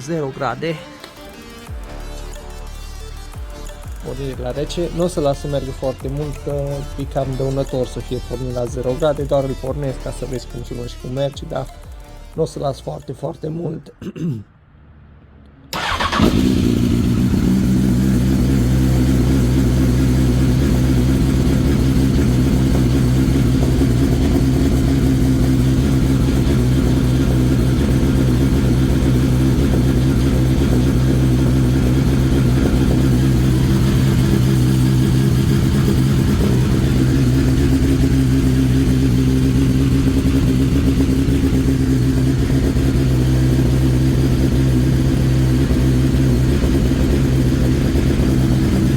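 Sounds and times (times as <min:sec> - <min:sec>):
motorcycle engine starting and idling: 0:15.7 - 0:48.9.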